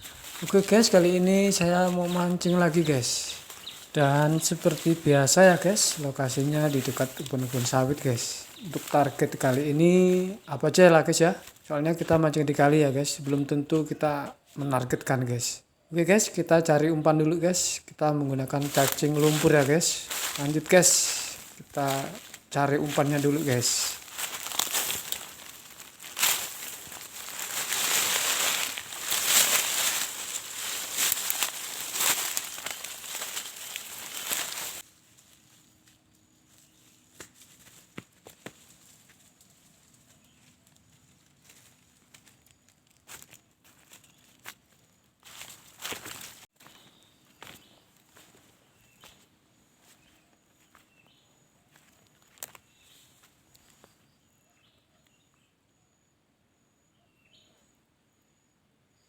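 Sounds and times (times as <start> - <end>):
crunches of movement on ground: 0.0 - 15.1, 16.0 - 54.0
dry vegetation rustling: 0.0 - 15.2, 16.0 - 49.2, 49.8 - 54.0
faint high insect-like whine: 23.3 - 46.3, 47.4 - 59.0.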